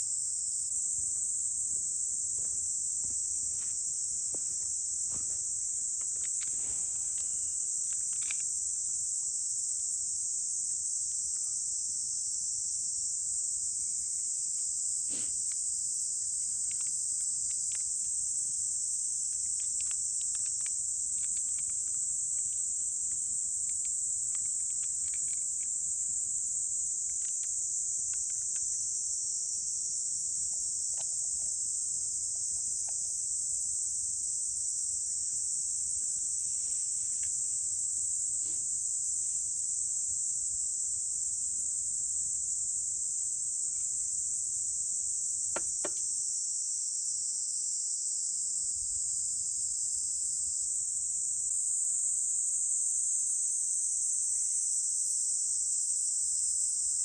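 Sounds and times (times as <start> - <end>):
insects shrill buzzing: 0.0 - 57.0
faint clicks: 6.0 - 9.3, 16.3 - 18.2, 19.2 - 26.3, 26.9 - 28.8.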